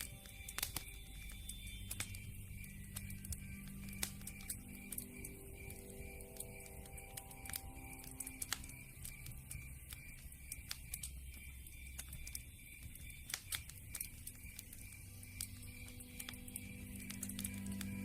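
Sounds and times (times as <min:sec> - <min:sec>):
campfire crackling and popping: 0:00.0 - 0:18.0
soft sustained music notes: 0:00.0 - 0:18.0.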